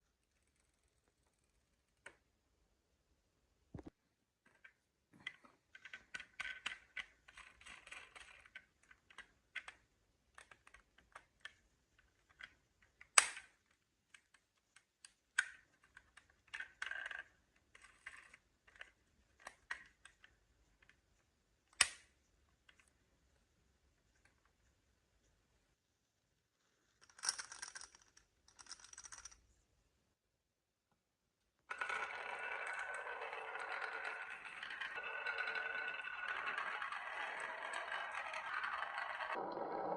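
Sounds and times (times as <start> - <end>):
marbles rolling through wooden run: 31.7 - 39.9.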